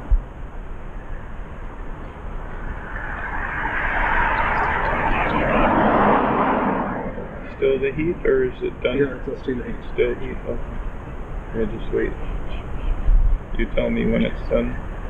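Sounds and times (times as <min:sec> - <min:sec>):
passing vehicle engine: 0:00.6 - 0:11.2.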